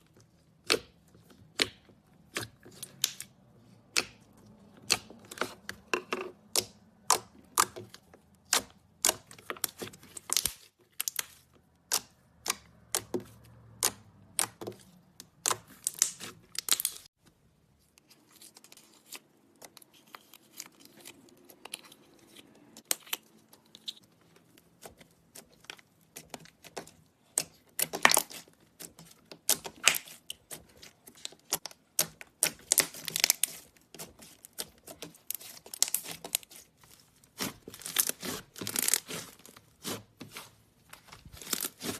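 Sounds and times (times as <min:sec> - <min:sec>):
slime popping and crackling: 0:15.4 - 0:17.1, 0:29.3 - 0:40.0.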